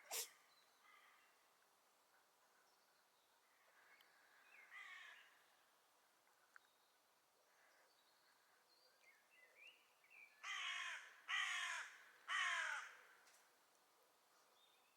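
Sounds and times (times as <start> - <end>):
faint songbird chirps: 0.1 - 1.5
crow cawing: 4.7 - 5.2, 10.4 - 13.0.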